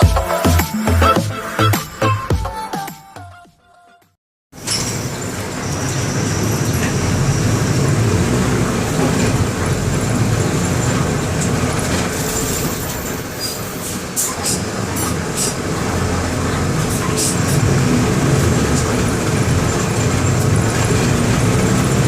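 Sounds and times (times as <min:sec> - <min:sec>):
bus diesel engine running: 0:04.6 - 0:22.0.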